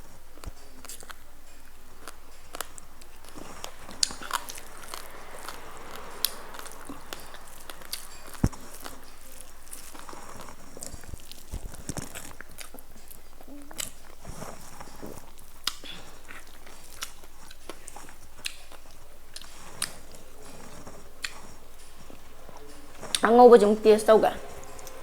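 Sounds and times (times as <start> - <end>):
person chewing food: 0.0 - 23.3
light mouth clicks: 2.0 - 23.2.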